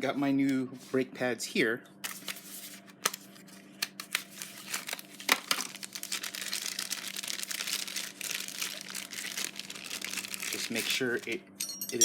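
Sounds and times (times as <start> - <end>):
packaging crinkling and rustling: 2.1 - 11.4.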